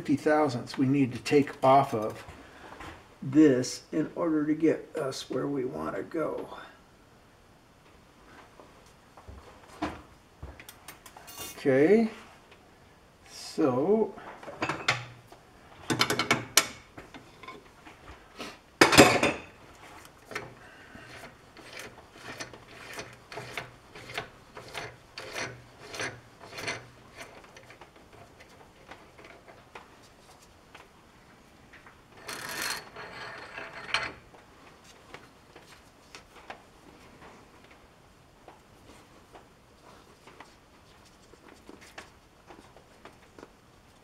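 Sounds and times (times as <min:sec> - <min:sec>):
metal parts rubbing and scraping: 0:20.2 - 0:29.5, 0:32.2 - 0:34.2.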